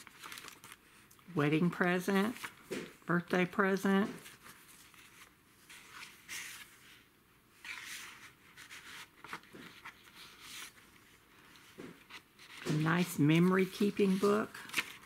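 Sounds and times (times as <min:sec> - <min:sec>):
paper pages rustling: 0:00.0 - 0:01.1, 0:01.8 - 0:15.0
soft paper swishes: 0:03.8 - 0:15.0.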